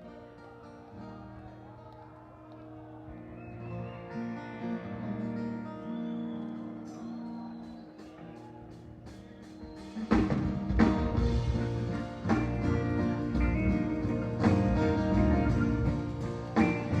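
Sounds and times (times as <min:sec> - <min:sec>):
live rock band playing: 0:07.7 - 0:17.0.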